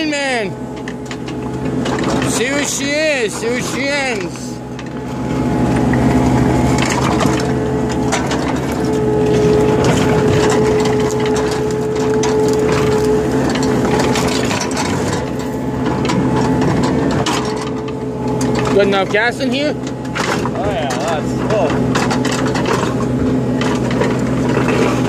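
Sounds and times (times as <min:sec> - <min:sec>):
heavy machine engine running: 0:00.0 - 0:25.0
clanks and knocks of metal: 0:06.7 - 0:25.0.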